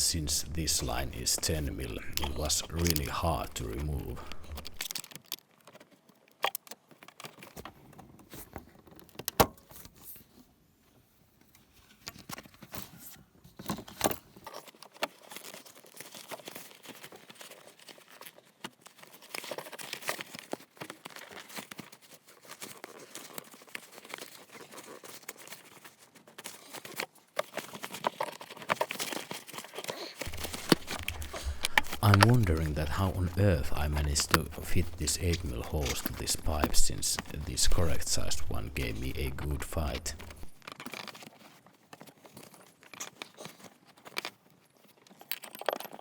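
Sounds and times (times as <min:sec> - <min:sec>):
hands rustling and scraping hose: 0:30.3 - 0:40.6.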